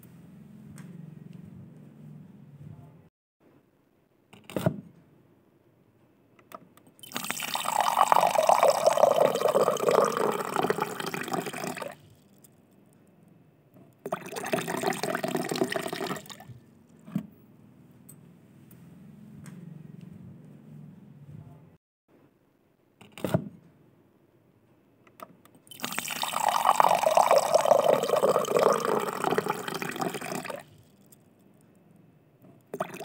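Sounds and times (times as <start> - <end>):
water pouring: 7.0 - 12.0, 14.1 - 16.6, 25.7 - 30.8, 32.8 - 33.0.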